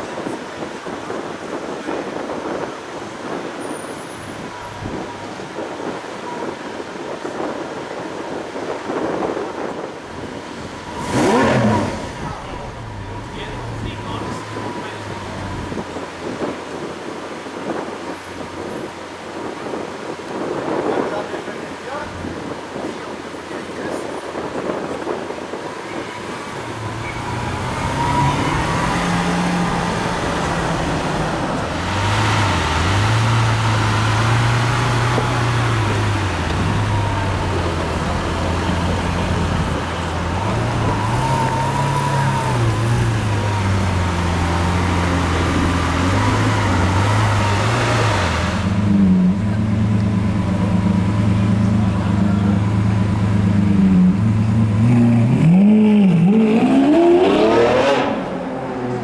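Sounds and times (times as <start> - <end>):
traffic noise: 0.0 - 59.0
sports car engine idling: 48.6 - 54.8.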